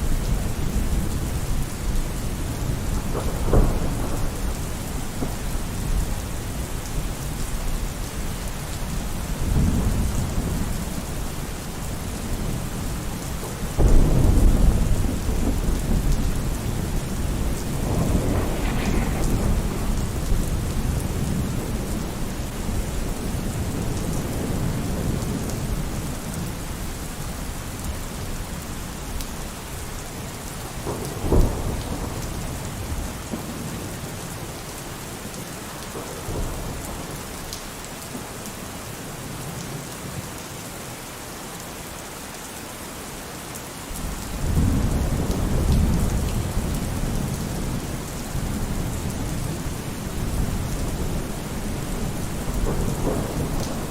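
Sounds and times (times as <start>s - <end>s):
thunder rumbling: 0.0s - 7.8s, 12.0s - 26.5s, 30.6s - 34.1s, 44.0s - 53.9s
steady rainfall: 0.0s - 53.9s
sharp thunderclap: 2.9s - 6.4s, 13.8s - 22.8s, 30.7s - 33.9s, 50.2s - 53.9s.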